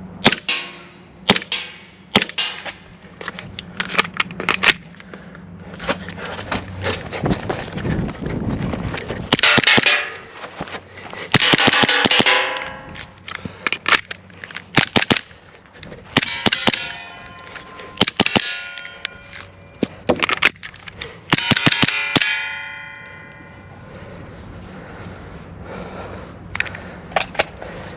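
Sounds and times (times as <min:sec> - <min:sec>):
airsoft pistol firing: 0:00.2 - 0:00.7, 0:09.3 - 0:10.1, 0:11.3 - 0:12.8
metallic clanging and ringing: 0:00.5 - 0:02.8, 0:09.4 - 0:10.5, 0:11.4 - 0:13.2, 0:16.2 - 0:19.8, 0:21.3 - 0:23.9.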